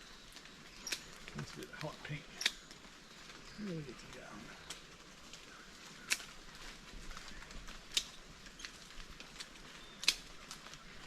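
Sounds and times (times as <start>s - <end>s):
faint rainforest hiss: 0.0s - 11.0s
secateurs snipping: 10.0s - 10.4s.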